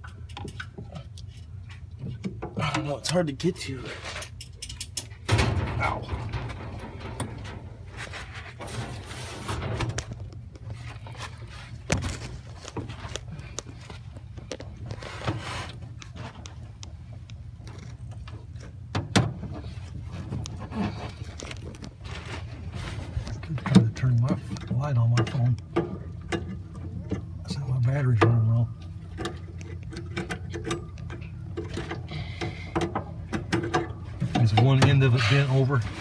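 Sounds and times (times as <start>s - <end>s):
steady low rumble: 5.0s - 15.2s.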